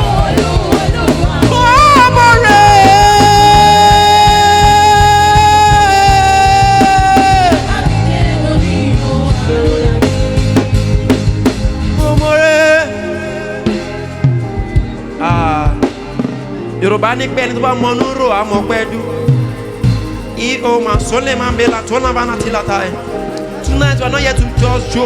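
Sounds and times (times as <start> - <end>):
person singing: 0.0 - 10.8
worship band playing: 0.0 - 25.0.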